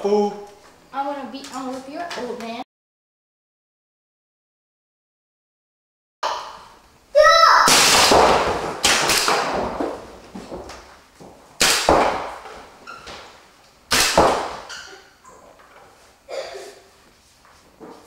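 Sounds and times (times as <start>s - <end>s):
paintball markers firing: 7.7s - 9.8s, 13.9s - 14.7s.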